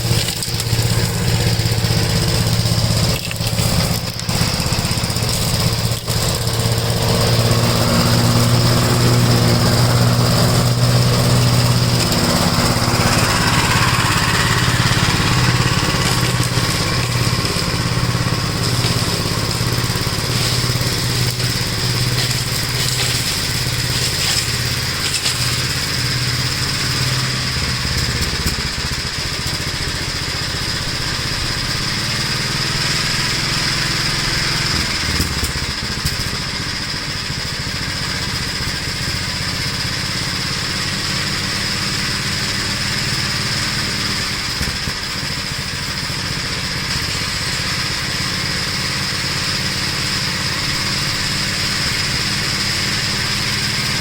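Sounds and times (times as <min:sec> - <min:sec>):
tractor engine running: 0:00.0 - 0:54.0.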